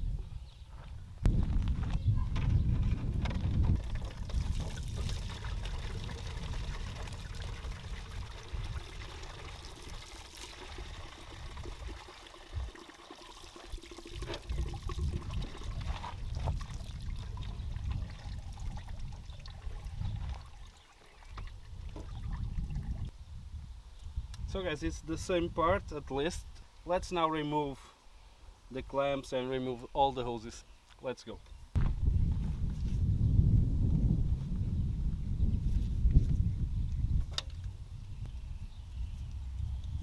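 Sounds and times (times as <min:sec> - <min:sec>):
water pouring and trickling: 0:03.7 - 0:23.1.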